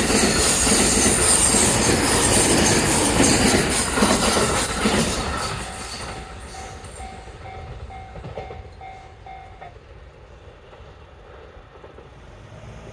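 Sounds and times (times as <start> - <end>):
level crossing alarm bell: 0.0 - 9.5
train running noise: 0.0 - 12.9.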